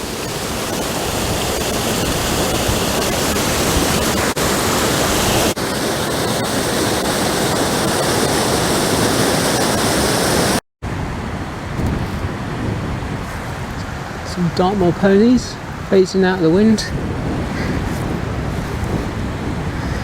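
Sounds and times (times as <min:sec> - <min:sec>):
waterfall rushing: 0:00.0 - 0:10.6.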